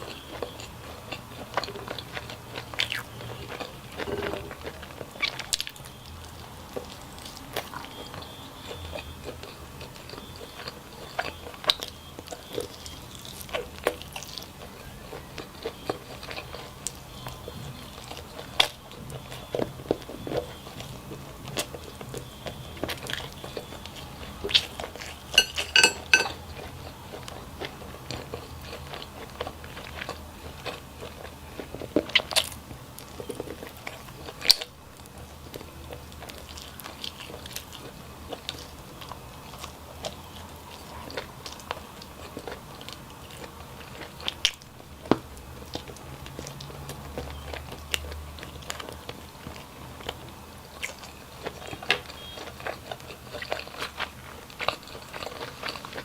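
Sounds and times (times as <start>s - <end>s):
person chewing crunchy food: 0.0s - 56.0s.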